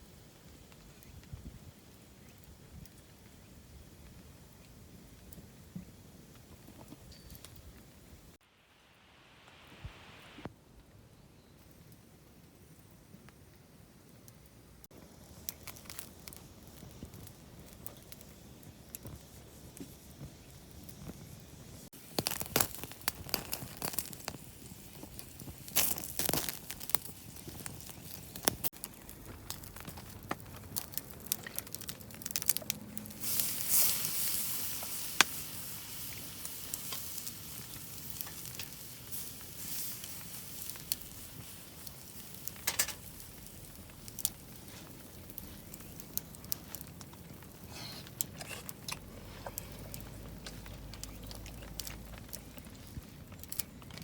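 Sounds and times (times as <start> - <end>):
food sizzling: 14.9 - 46.8.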